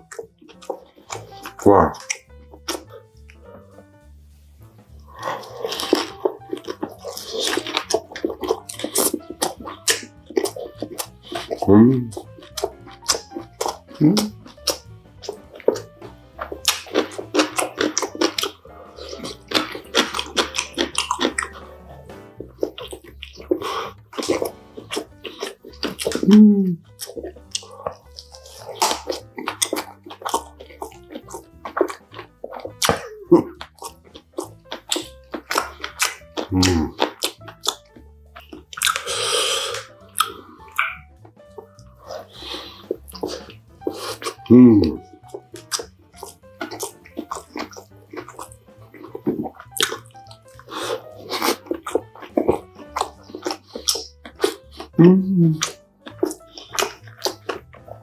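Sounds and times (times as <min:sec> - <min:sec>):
chewing dumplings: 0:00.0 - 0:58.0
quiet background music: 0:00.0 - 0:58.0
person humming: 0:11.6 - 0:12.2, 0:13.9 - 0:14.4, 0:26.2 - 0:26.9, 0:36.5 - 0:37.0, 0:44.4 - 0:45.0, 0:55.0 - 0:55.7.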